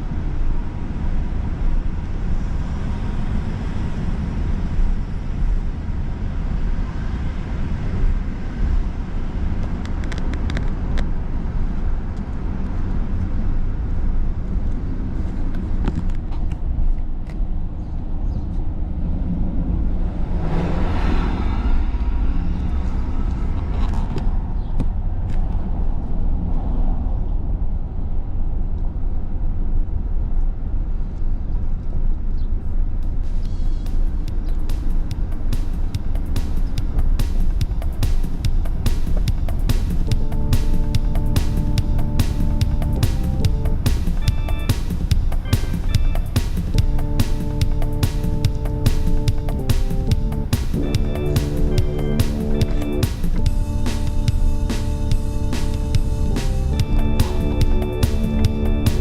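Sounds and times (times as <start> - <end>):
road traffic rumble: 0.0 - 27.6, 32.8 - 59.0
vehicle passing close: 19.5 - 23.8.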